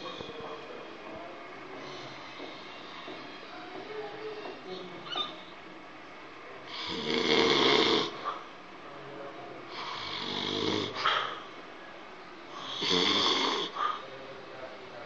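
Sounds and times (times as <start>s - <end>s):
person snoring: 6.7s - 8.2s, 9.8s - 11.0s, 12.6s - 13.8s.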